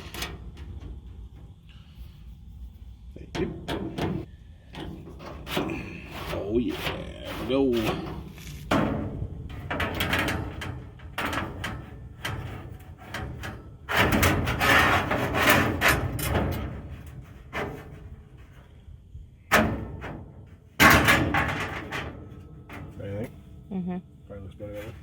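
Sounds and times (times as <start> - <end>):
metal rattling: 3.2 - 18.8, 19.5 - 23.7
sheet metal clanking: 3.3 - 18.7, 19.5 - 23.6.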